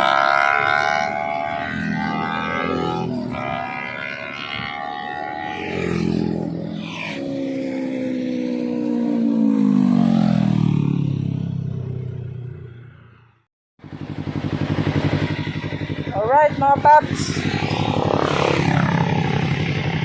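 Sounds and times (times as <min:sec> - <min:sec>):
motorcycle passing by: 0:00.0 - 0:20.0
motorcycle engine idling: 0:13.8 - 0:20.0.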